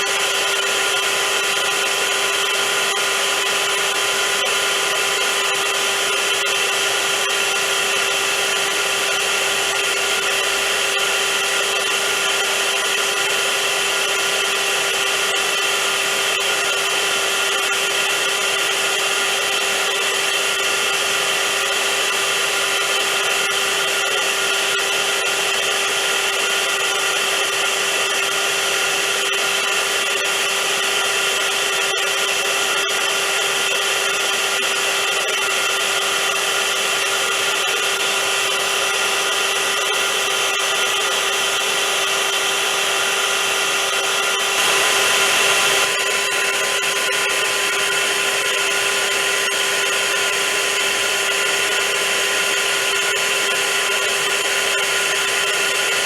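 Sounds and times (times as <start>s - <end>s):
vacuum cleaner motor running: 0.0s - 56.0s.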